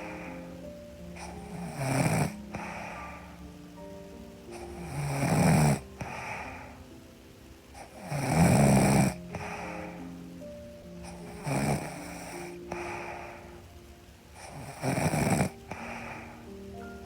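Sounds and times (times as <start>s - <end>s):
woman snoring: 0.0s - 3.5s, 4.5s - 6.8s, 7.8s - 10.1s, 11.0s - 13.7s, 14.4s - 16.5s
soft background music: 0.0s - 17.0s.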